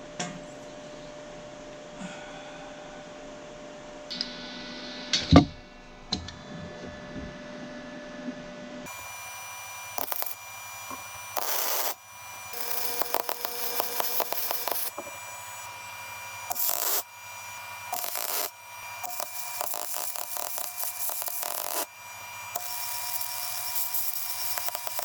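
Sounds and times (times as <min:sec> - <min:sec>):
power tool motor running: 0:08.9 - 0:25.0.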